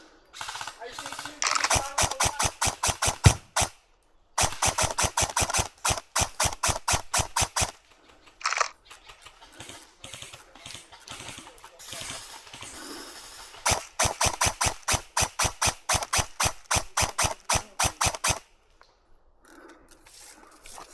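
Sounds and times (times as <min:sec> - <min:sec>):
airsoft gun rapid firing: 0:00.4 - 0:03.8, 0:04.4 - 0:18.5.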